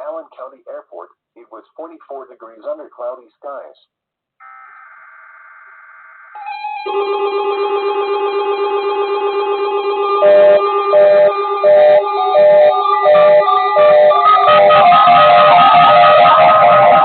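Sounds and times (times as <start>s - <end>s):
electronic alarm tones: 6.3s - 17.0s.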